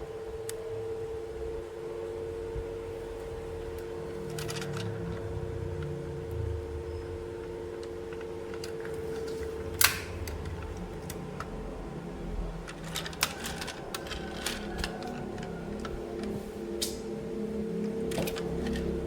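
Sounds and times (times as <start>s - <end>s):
steady low hum: 0.0s - 19.0s
plastic toys clicking and tapping: 12.6s - 16.4s, 18.1s - 19.0s.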